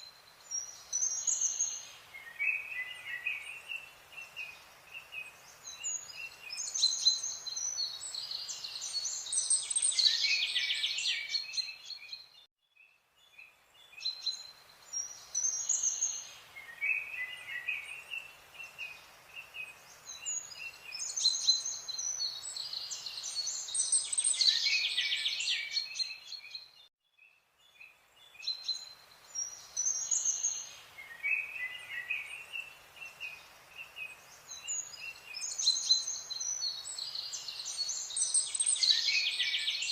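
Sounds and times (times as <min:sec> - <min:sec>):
birds chirping and trilling: 0:00.4 - 0:39.9.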